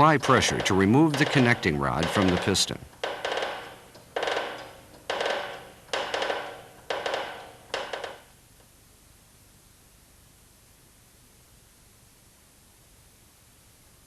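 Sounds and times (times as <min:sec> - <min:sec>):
sharp metallic knocks ringing: 0:00.0 - 0:08.3.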